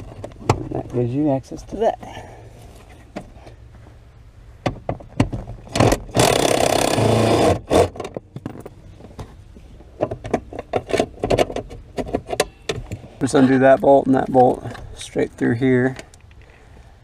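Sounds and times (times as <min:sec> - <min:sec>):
metal clicks and knocks: 0:04.6 - 0:06.4, 0:09.9 - 0:13.0
loud rasping burst: 0:05.9 - 0:08.0.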